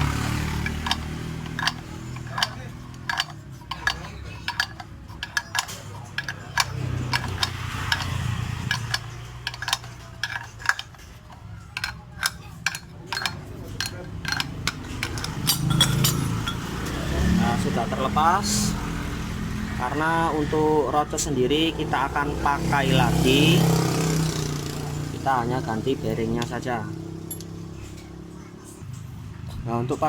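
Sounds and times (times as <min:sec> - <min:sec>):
metallic clicks of hand tools: 0:00.0 - 0:17.0, 0:27.2 - 0:27.6.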